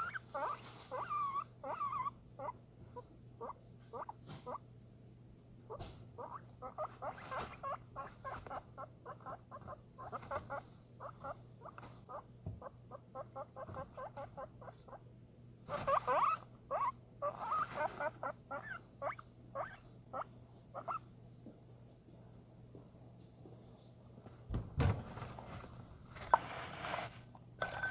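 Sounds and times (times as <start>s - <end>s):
guinea pig squeaking: 0.0s - 4.6s, 5.7s - 15.0s, 15.6s - 21.1s, 27.6s - 27.9s.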